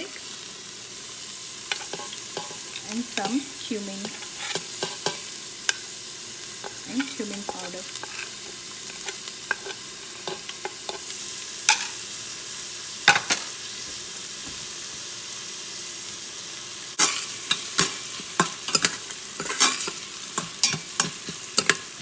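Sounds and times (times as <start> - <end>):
onions sizzling in oil: 0.0 - 22.0
spoon scraping a pot: 1.7 - 5.9, 6.5 - 12.0, 17.0 - 22.0.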